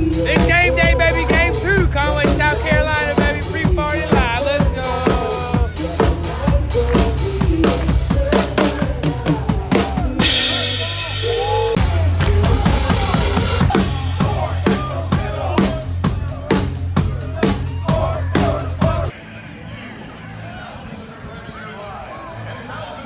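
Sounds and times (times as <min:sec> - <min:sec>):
fast heavy drum beat: 0:00.0 - 0:19.1
heavy bass: 0:00.0 - 0:19.1.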